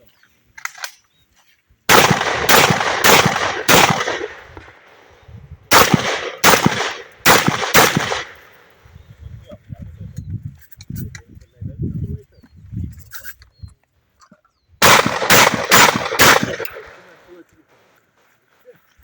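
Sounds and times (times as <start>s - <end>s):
shotgun shots with echo: 1.9s - 4.8s, 5.7s - 8.6s, 14.8s - 17.2s.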